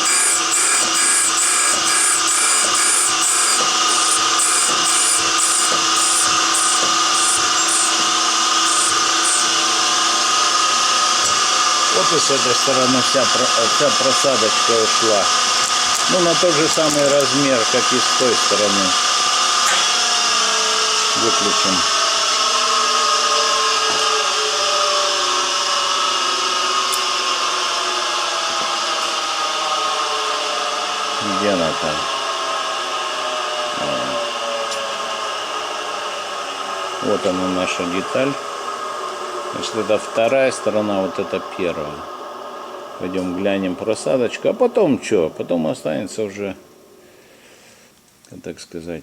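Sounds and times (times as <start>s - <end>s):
grinding wheel hissing bursts: 0.0s - 19.7s
surface grinder whining: 0.0s - 46.2s.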